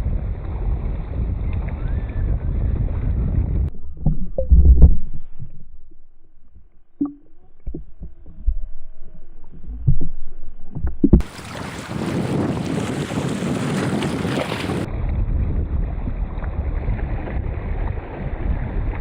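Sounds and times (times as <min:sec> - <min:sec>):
wind noise on microphone: 0:00.0 - 0:19.0
muffled low thumps: 0:02.8 - 0:11.4.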